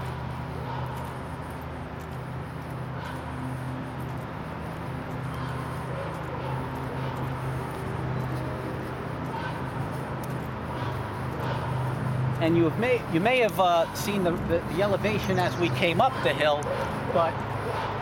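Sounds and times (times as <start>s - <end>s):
dog barking through loudspeaker: 0.0s - 1.1s, 3.0s - 3.2s, 5.3s - 7.6s, 9.2s - 9.9s, 10.7s - 12.0s, 13.2s - 18.0s
highway traffic drone: 0.0s - 18.0s.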